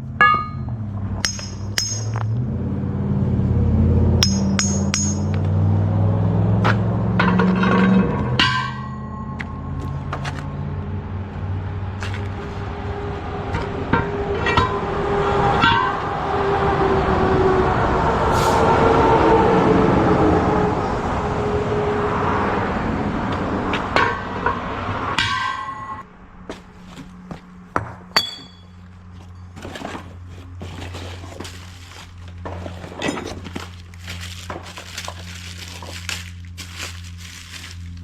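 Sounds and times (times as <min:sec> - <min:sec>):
metal clanks and knocks: 0:00.0 - 0:02.4, 0:04.2 - 0:05.6, 0:06.5 - 0:10.6, 0:12.0 - 0:16.2, 0:23.7 - 0:26.7, 0:27.3 - 0:35.2.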